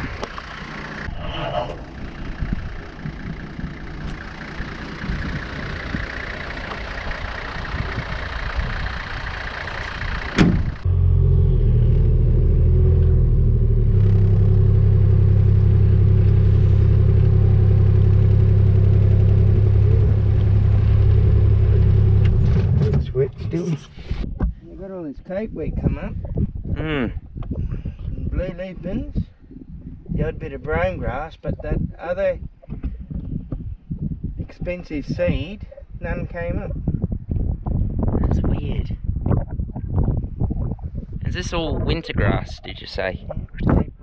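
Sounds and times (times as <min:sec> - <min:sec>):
loud engine running: 0:00.0 - 0:23.6.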